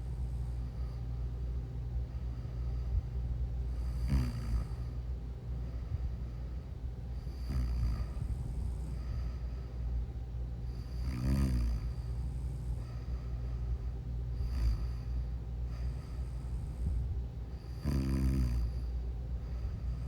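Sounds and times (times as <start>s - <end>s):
soft breaths: 0.0s - 20.0s
steady low hum: 0.0s - 20.0s
person snoring: 3.8s - 4.8s, 7.2s - 9.0s, 10.7s - 12.7s, 14.4s - 15.1s, 17.7s - 18.8s.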